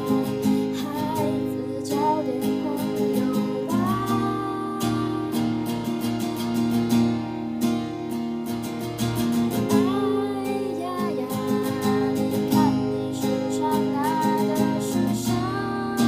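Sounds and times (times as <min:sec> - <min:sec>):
person singing: 0:00.0 - 0:06.0, 0:09.6 - 0:16.0
strummed acoustic guitar: 0:00.0 - 0:16.0.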